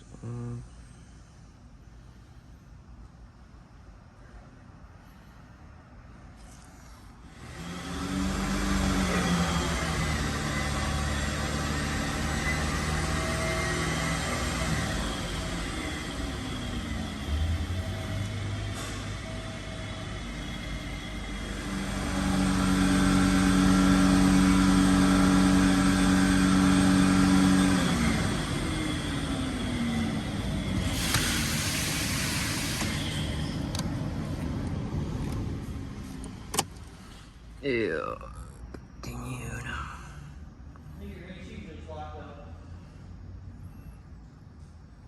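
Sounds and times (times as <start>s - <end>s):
car engine revving and idling: 7.2s - 37.2s.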